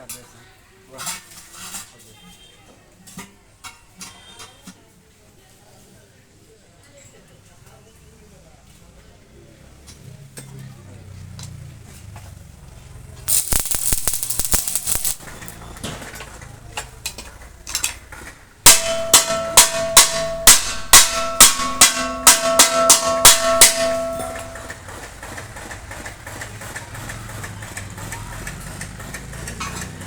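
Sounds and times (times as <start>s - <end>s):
hammer striking metal: 13.3s - 15.5s, 18.7s - 24.7s.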